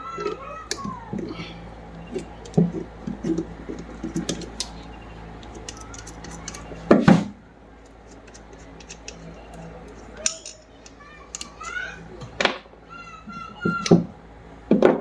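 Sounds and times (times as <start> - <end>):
small metal clicks and taps: 7.8 - 11.8.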